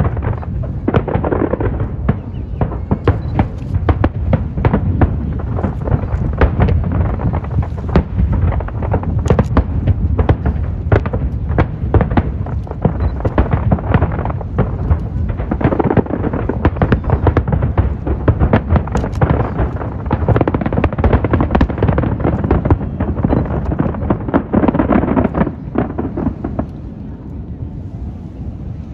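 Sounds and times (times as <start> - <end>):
fireworks bangs and cracks: 0.0 - 27.1
deep rolling rumble: 0.0 - 28.9.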